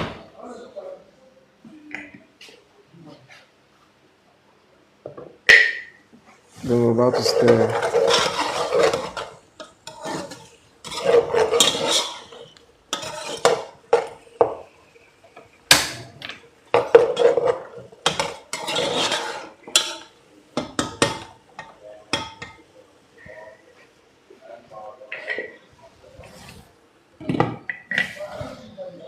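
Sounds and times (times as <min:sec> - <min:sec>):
spoon scraping a cooking pot: 0:07.1 - 0:14.7, 0:16.8 - 0:22.6.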